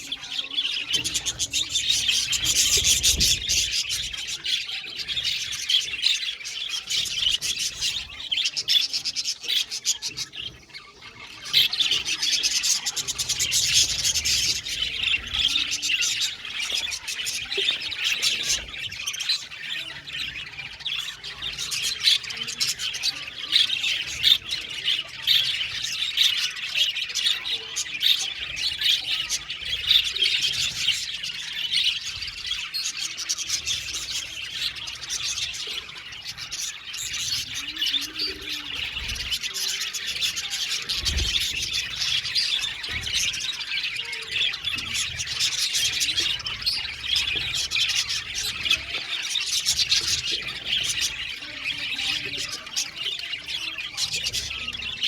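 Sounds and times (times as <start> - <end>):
budgerigars chirping: 0.0 - 55.0.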